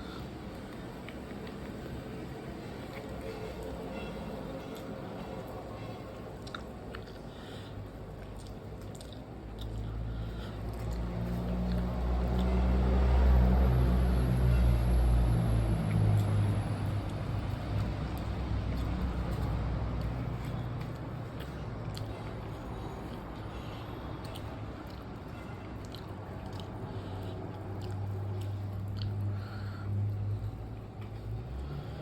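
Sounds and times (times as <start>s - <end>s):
person chewing food: 0.2s - 1.8s, 6.4s - 12.6s, 17.1s - 30.2s.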